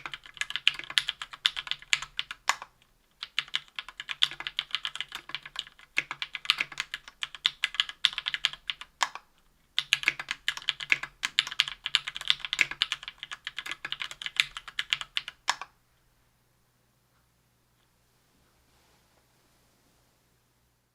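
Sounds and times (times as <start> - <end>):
mechanical keyboard typing: 0.0 - 15.7.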